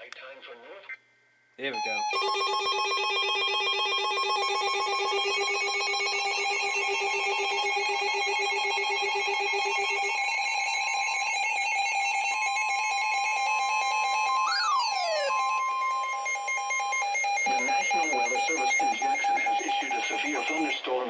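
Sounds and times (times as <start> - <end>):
electronic ringer-like trill: 1.7 - 20.8
steady high alarm tone: 1.7 - 20.9
rising and falling electronic glide: 14.4 - 17.0.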